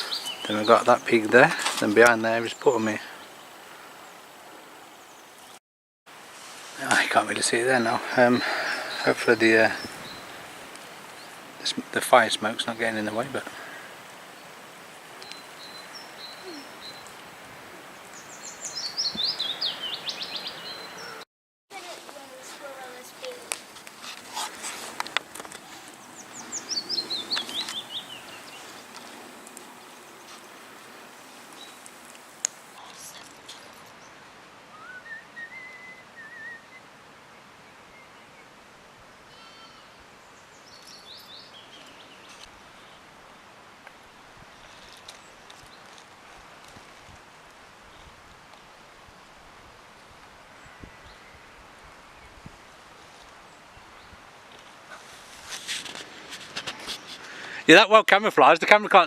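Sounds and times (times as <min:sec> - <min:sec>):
birds calling: 0:00.0 - 0:05.6, 0:06.8 - 0:21.2, 0:22.6 - 0:34.2
songbird singing: 0:00.0 - 0:05.6, 0:06.9 - 0:21.2, 0:21.8 - 0:43.1, 0:49.9 - 0:55.0
steady outdoor hiss: 0:00.0 - 0:59.0.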